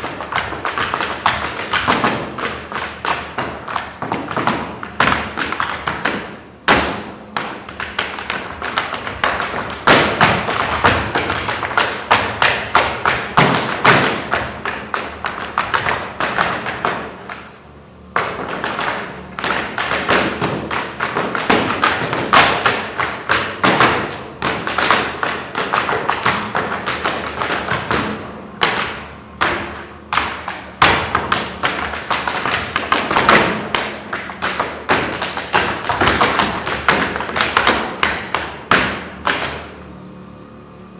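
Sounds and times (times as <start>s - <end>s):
feet stamping on stage floor: 0.0s - 39.7s.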